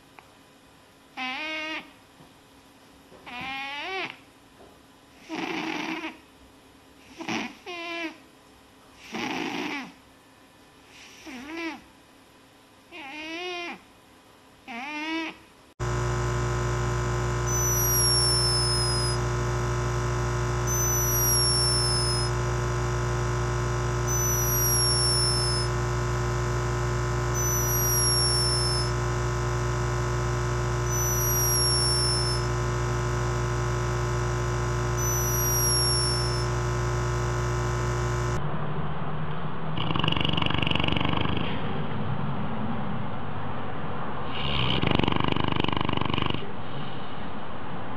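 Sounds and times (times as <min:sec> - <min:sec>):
cat purring: 0:05.3 - 0:06.2
electronic drone: 0:15.8 - 0:39.1
short falling chirp: 0:30.9 - 0:32.5, 0:35.0 - 0:36.5.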